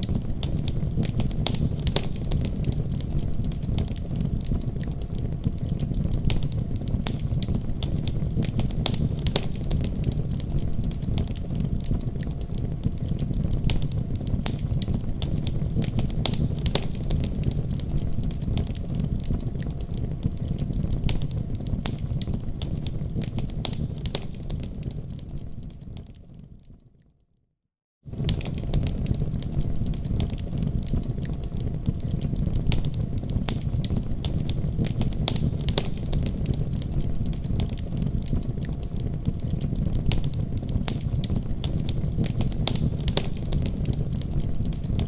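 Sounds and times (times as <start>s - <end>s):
wood fire crackling: 0.0s - 26.8s, 28.1s - 45.0s.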